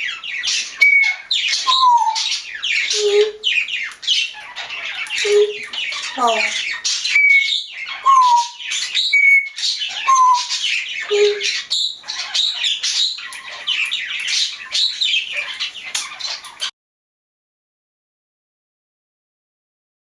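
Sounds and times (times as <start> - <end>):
parrot chattering and squawking: 0.4 - 16.7
parrot whistles: 0.8 - 2.3, 7.2 - 10.5.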